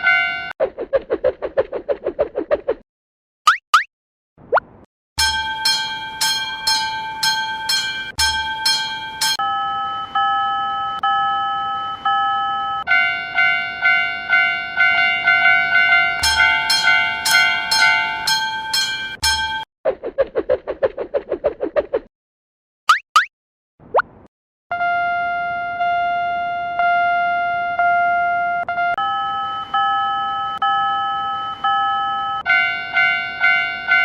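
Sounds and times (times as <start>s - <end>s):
level crossing alarm bells: 0.0s - 0.5s, 5.2s - 19.7s, 26.8s - 34.0s.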